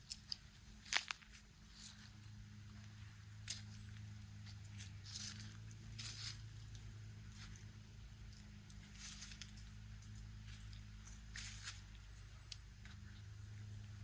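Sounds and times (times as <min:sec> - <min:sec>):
steady low hum: 0:00.0 - 0:14.0
footsteps scuffing: 0:04.4 - 0:06.6, 0:10.4 - 0:12.0.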